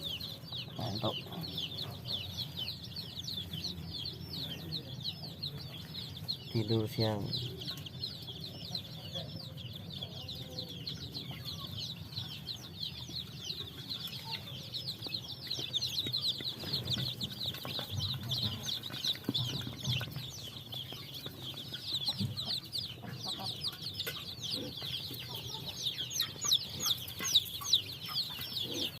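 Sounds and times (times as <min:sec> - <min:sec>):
chicks peeping: 0:00.0 - 0:29.0.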